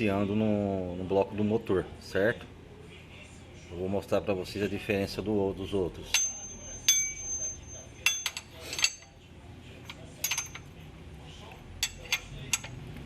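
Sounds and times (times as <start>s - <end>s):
metal tools clinking: 6.0s - 9.2s, 9.8s - 10.8s, 11.8s - 12.9s.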